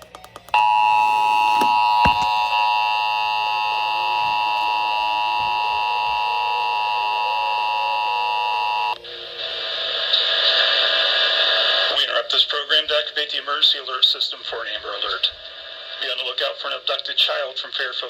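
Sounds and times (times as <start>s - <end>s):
broadcast noise hiss: 9.0s - 18.0s.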